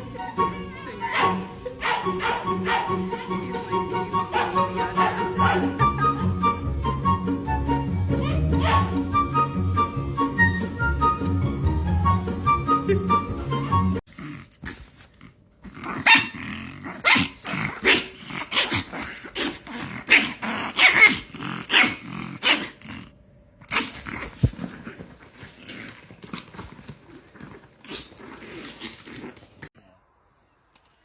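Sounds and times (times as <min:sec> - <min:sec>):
dog barking: 0:01.1 - 0:03.0, 0:04.3 - 0:05.8, 0:08.6 - 0:09.0, 0:16.0 - 0:16.4, 0:17.0 - 0:18.8, 0:20.1 - 0:22.8
dog growling: 0:14.1 - 0:29.7.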